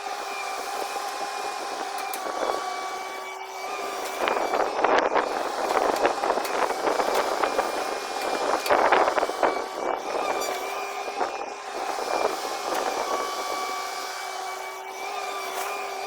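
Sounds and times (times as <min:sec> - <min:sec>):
constant machine whine: 0:00.0 - 0:16.0
excavator engine drone: 0:00.0 - 0:16.0.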